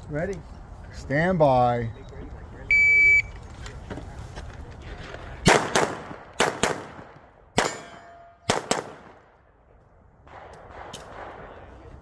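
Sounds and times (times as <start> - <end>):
pistol shots: 5.4 - 9.2
steel targets ringing: 7.6 - 8.5.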